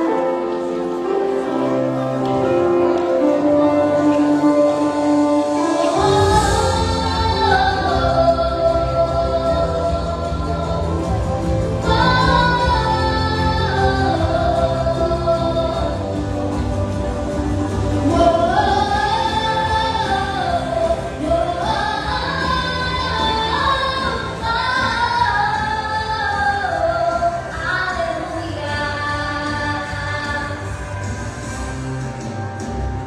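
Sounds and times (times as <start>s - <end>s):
group of voices singing: 4.8s - 17.1s.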